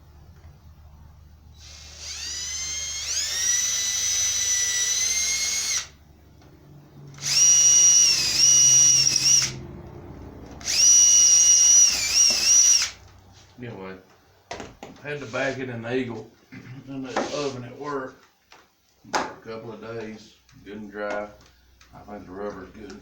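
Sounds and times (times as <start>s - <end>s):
electric drill whining: 1.5s - 6.0s, 7.0s - 9.7s, 10.4s - 13.0s.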